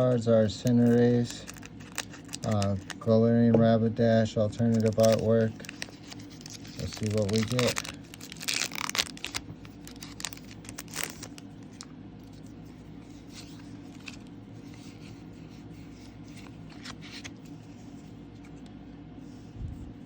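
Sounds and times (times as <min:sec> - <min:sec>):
cards rustling: 0:00.0 - 0:03.2, 0:04.3 - 0:19.5
low hum: 0:00.0 - 0:20.0
foil wrapper crinkling: 0:00.6 - 0:03.1, 0:04.4 - 0:15.2.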